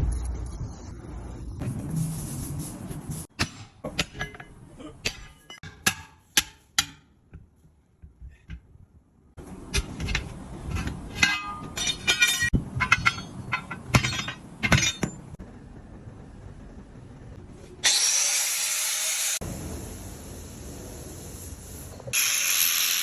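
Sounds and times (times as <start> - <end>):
metal struck and clinking: 9.7 - 15.4
loud steady hiss: 19.4 - 23.0.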